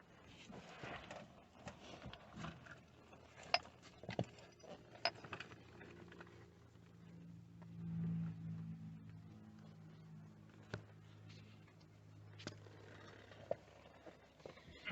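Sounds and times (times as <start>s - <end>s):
hand tools clicking and knocking: 3.4s - 5.5s
low hum: 6.3s - 12.4s.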